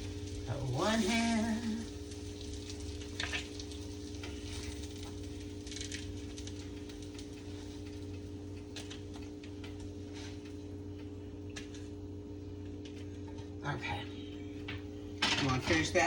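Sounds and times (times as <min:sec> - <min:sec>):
food sizzling in a pan: 0:00.0 - 0:10.9
low hum: 0:00.0 - 0:16.0.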